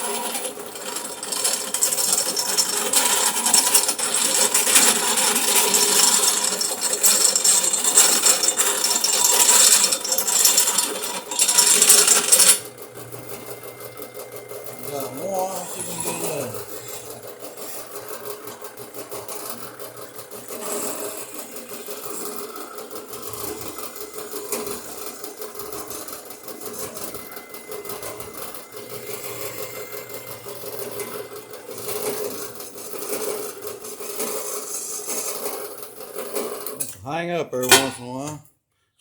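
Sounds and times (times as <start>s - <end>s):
drill press motor hum: 0.0s - 34.0s
drill bit chattering in steel: 0.3s - 12.7s.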